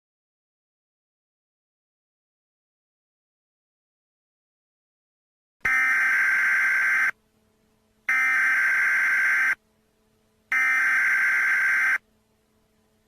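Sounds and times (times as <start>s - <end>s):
screechy digital data bursts: 5.7s - 7.1s, 8.1s - 9.6s.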